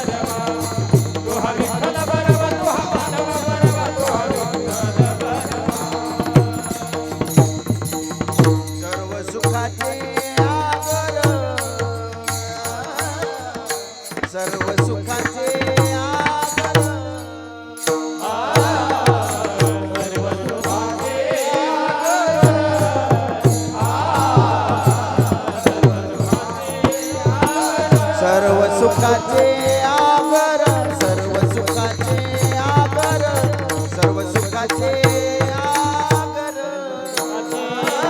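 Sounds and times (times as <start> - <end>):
voices singing: 0.0 - 38.0
hand drum beating: 3.5 - 12.3, 22.4 - 36.3.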